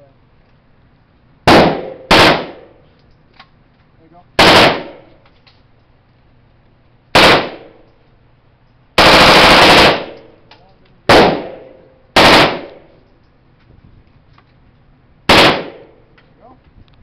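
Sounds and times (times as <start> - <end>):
gunshots with echo: 1.5 - 2.7, 4.4 - 5.1.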